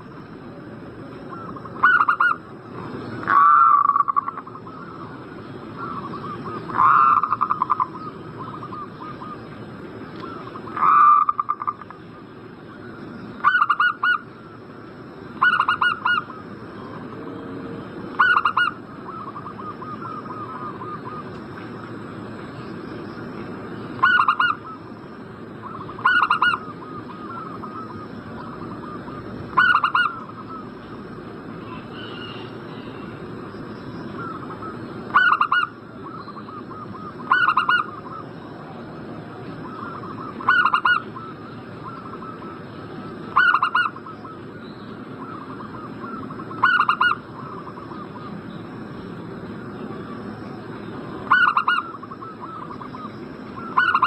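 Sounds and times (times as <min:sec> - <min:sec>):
faint high whine: 0:00.0 - 0:54.0
dove cooing: 0:01.0 - 0:02.4, 0:03.2 - 0:09.4, 0:10.2 - 0:11.9, 0:13.4 - 0:14.5, 0:15.4 - 0:21.4, 0:24.0 - 0:24.9, 0:25.6 - 0:30.8, 0:34.1 - 0:48.3, 0:51.2 - 0:54.0.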